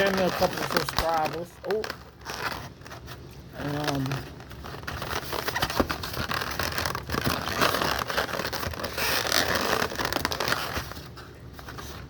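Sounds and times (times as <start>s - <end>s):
crackles and clicks: 0.0s - 12.0s
rustling and scraping: 0.0s - 12.0s.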